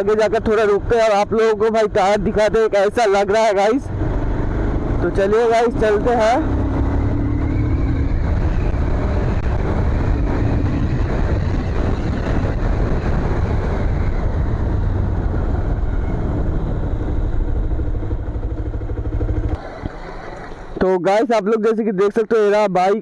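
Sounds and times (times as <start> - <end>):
wind rushing on microphone: 0.0 - 19.6
motorcycle engine running: 3.8 - 20.8.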